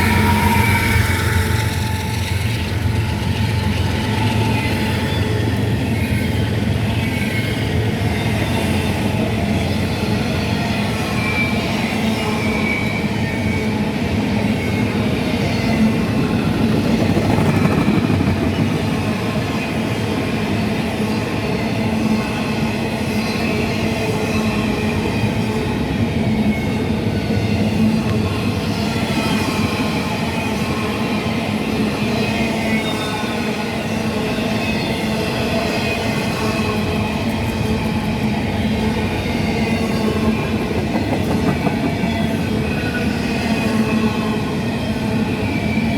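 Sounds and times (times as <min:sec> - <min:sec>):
faint wheel squeal: 0:00.0 - 0:07.6
freight train rumbling past: 0:00.0 - 0:45.9.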